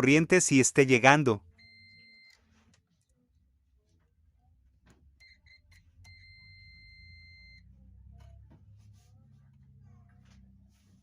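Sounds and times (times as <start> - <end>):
multimeter beeps: 1.6 - 2.4, 5.2 - 7.7.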